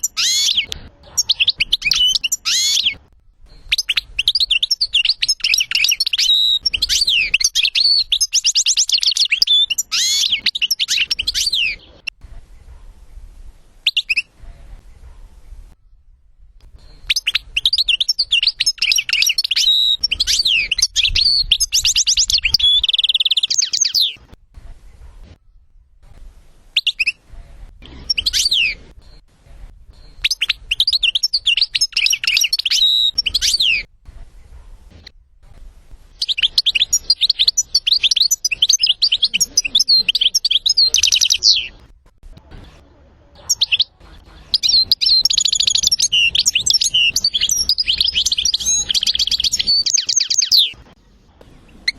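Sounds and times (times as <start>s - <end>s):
goldfinch singing: 0.0s - 12.1s, 16.8s - 24.3s, 27.8s - 28.8s, 30.0s - 33.9s, 36.2s - 41.8s, 43.4s - 50.8s.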